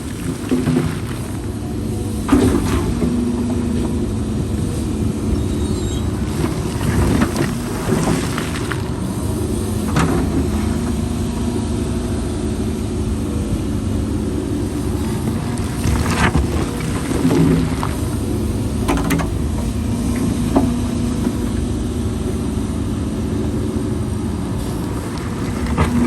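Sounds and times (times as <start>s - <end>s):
diesel machinery droning: 0.0s - 26.0s.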